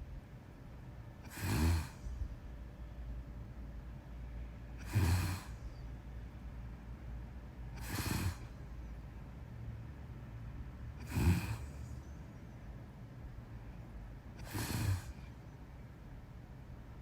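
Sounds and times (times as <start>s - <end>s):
person snoring: 1.3s - 2.1s, 4.8s - 5.6s, 7.8s - 8.5s, 11.0s - 11.8s, 14.4s - 15.2s.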